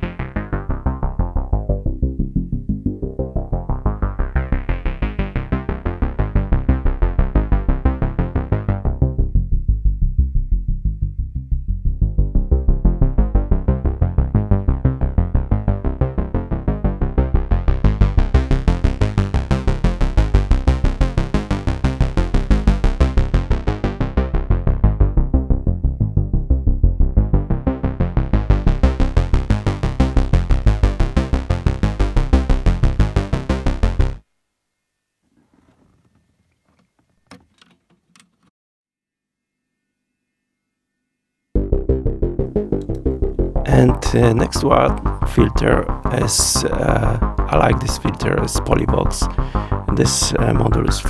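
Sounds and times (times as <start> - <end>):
synthesizer bass sequence: 41.6 - 51.0.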